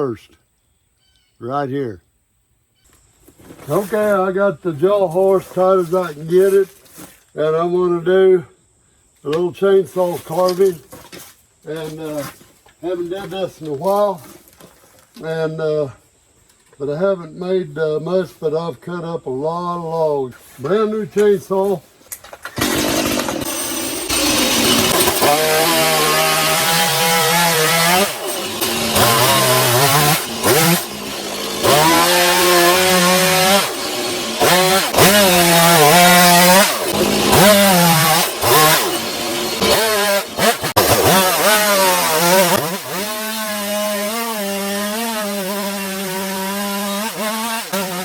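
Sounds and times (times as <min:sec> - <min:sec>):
chainsaw revving cutting log: 0:22.5 - 0:48.0.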